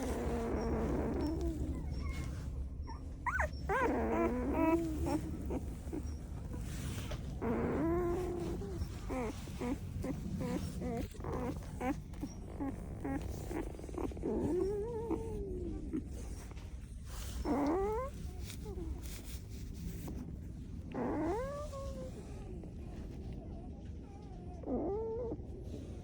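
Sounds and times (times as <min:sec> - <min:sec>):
puppies squeaking and whimpering: 0:00.0 - 0:19.3, 0:20.9 - 0:22.1.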